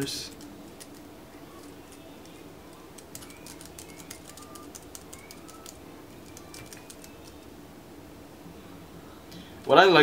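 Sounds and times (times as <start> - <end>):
keyboard keys clicking: 0.3 - 7.4.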